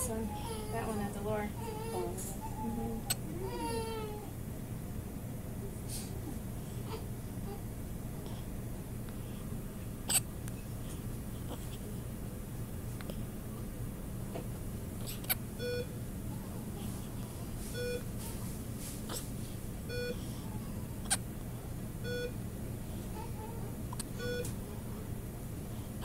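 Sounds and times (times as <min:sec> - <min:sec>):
steady low hum: 0:00.0 - 0:26.0
medical equipment beep: 0:15.6 - 0:16.0, 0:17.7 - 0:18.1, 0:19.9 - 0:20.2, 0:22.0 - 0:22.4, 0:24.1 - 0:24.6.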